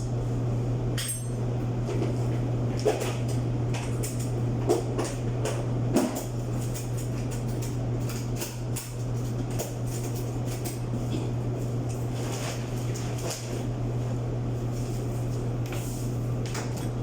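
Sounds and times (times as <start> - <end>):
clothes dryer motor hum: 0.0 - 17.0.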